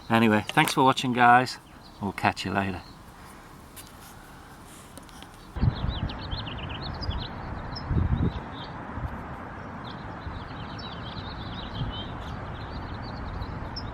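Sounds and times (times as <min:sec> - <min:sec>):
small birds chirping: 0:00.0 - 0:13.9
wind on microphone: 0:05.5 - 0:13.9.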